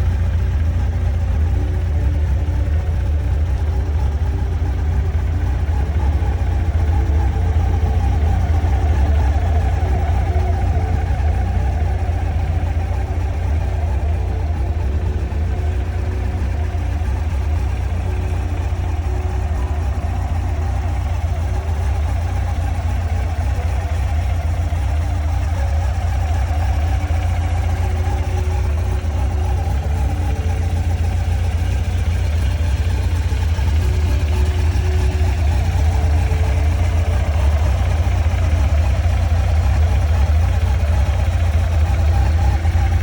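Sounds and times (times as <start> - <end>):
motorcycle engine idling: 0.0 - 43.0.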